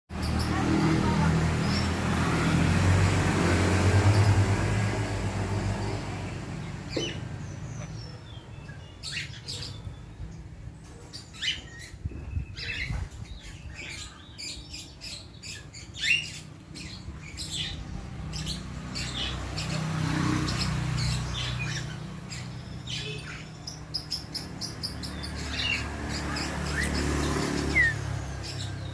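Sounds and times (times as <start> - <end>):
myna chirps and whistles: 27.6 - 28.0.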